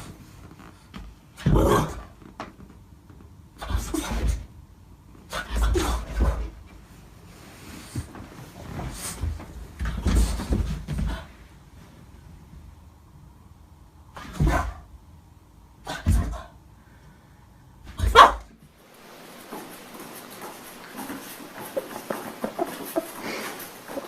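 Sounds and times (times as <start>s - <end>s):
dog barking: 18.0s - 18.4s
faint hiss: 18.7s - 24.0s.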